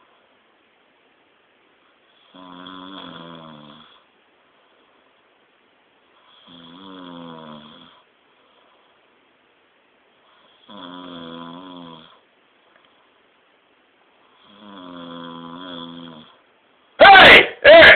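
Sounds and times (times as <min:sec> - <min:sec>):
person snoring: 0:02.2 - 0:04.1, 0:06.3 - 0:08.0, 0:10.5 - 0:12.2, 0:14.4 - 0:16.4.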